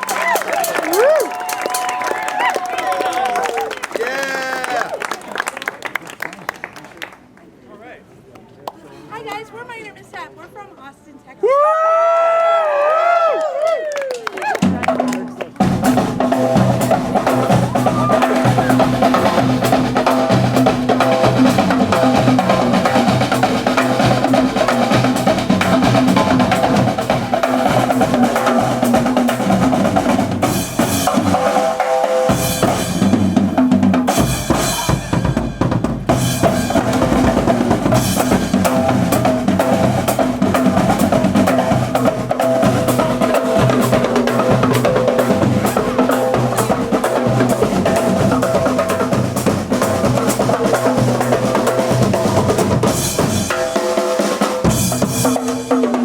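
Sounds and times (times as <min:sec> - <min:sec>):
marching drum cadence: 0:14.6 - 0:56.0.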